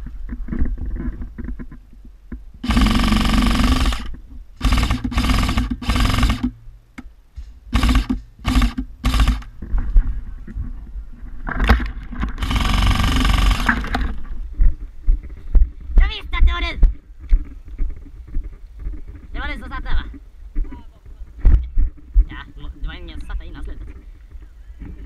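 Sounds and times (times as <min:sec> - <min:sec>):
airsoft gun firing bursts: 0:02.6 - 0:06.6, 0:07.7 - 0:09.5, 0:12.4 - 0:14.1.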